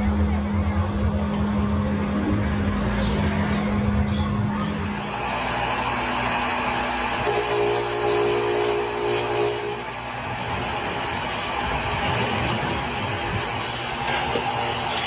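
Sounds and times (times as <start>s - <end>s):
power tool motor humming: 4.9s - 15.0s.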